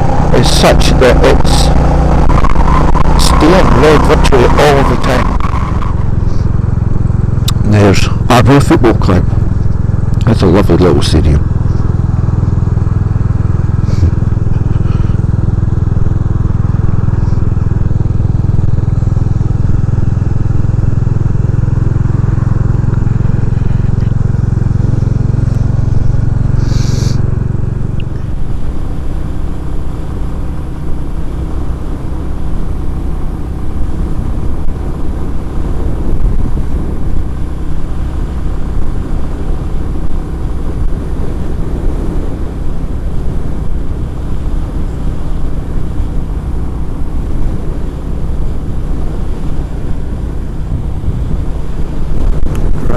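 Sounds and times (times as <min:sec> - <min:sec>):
motorcycle engine drone: 0:00.0 - 0:52.9
road noise: 0:00.0 - 0:52.9
wind: 0:00.0 - 0:52.9.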